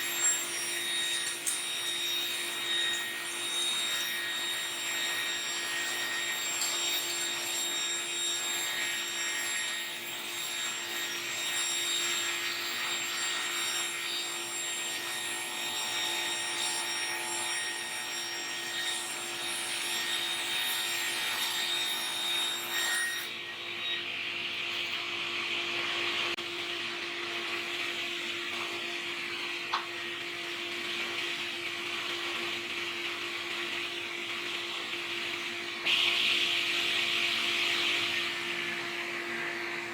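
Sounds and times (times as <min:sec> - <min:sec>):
power tool cutting wood: 0:00.0 - 0:24.0.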